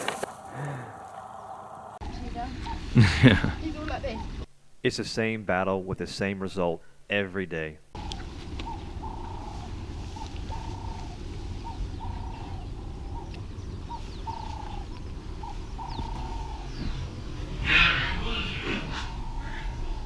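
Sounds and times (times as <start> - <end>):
animal calling: 0.0 - 3.2, 7.4 - 20.0.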